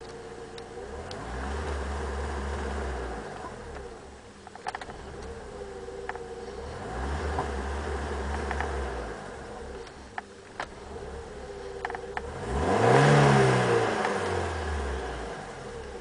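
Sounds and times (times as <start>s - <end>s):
car engine revving: 0.0s - 4.1s, 4.7s - 16.0s
sharp engine clicks: 11.8s - 12.4s.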